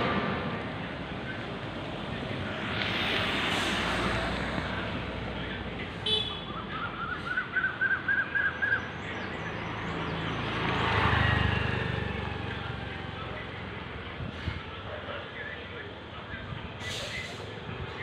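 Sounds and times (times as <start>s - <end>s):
street traffic: 0.0s - 18.0s
vehicle passing close: 1.5s - 5.8s, 9.7s - 13.6s
horn toot: 6.0s - 6.5s.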